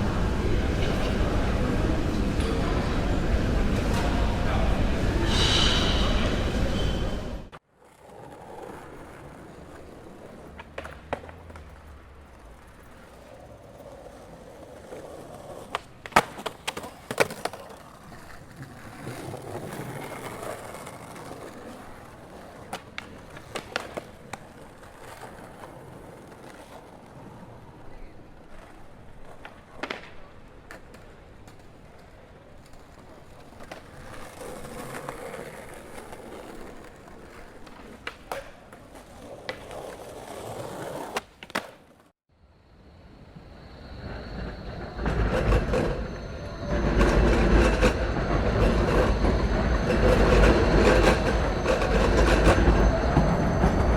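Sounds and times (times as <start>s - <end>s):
city background hum: 0.0s - 53.9s.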